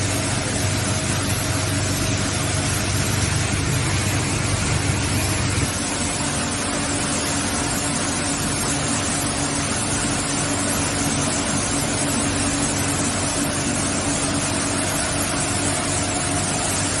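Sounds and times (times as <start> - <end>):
low steady hum: 0.0 - 5.8
machinery running: 0.0 - 17.0.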